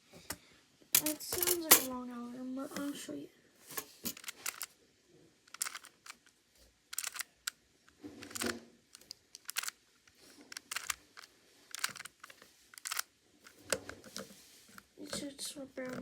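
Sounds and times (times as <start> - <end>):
plastic puzzle cube clacking: 4.1 - 4.7, 5.5 - 7.6, 8.2 - 9.8, 10.5 - 13.9.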